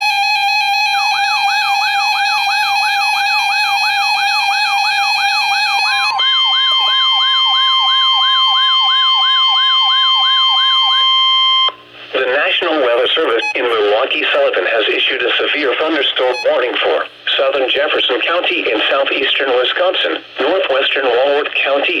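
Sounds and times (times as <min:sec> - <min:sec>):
rising siren sweep: 0:00.0 - 0:11.7
steady electronic alarm tone: 0:00.0 - 0:11.8, 0:12.4 - 0:17.1.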